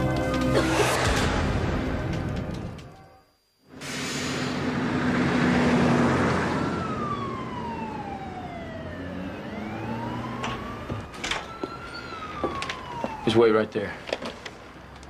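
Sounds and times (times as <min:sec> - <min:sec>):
vehicle rushing past: 0:04.3 - 0:11.1
distant police siren wailing: 0:04.6 - 0:15.0.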